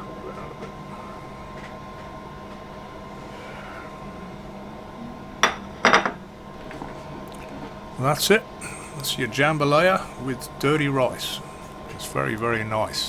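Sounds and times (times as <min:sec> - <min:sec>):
kitchen hum with high tone: 0:00.0 - 0:13.0
crockery clattering: 0:05.4 - 0:06.2.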